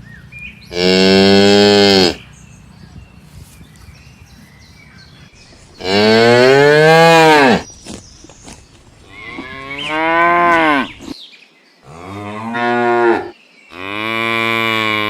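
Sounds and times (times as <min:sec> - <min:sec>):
cow mooing: 0:00.7 - 0:02.2.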